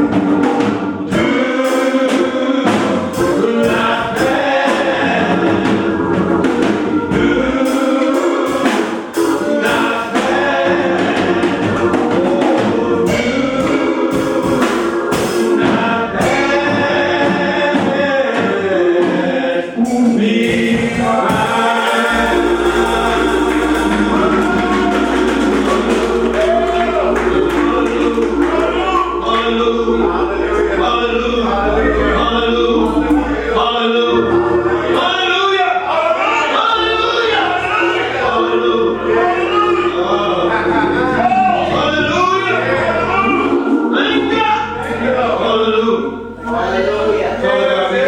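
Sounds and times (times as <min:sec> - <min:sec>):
gospel choir singing: 0:00.0 - 0:48.0
sharp percussive strokes: 0:21.2 - 0:31.6
low steady bass note: 0:22.1 - 0:35.0, 0:38.0 - 0:47.4.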